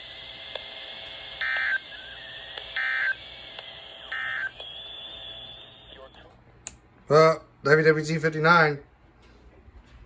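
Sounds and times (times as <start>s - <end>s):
radio hiss: 0.0s - 6.3s.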